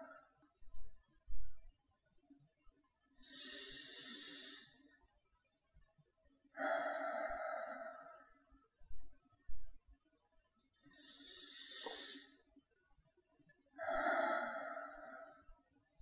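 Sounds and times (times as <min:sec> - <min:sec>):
hissing respirator breathing: 0:03.2 - 0:04.8, 0:10.9 - 0:12.4.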